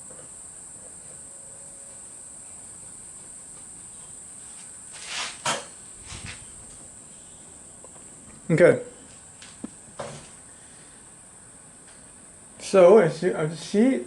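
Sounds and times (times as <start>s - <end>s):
high-pitched hiss: 0.0s - 14.0s
scraping rustle: 4.0s - 6.8s.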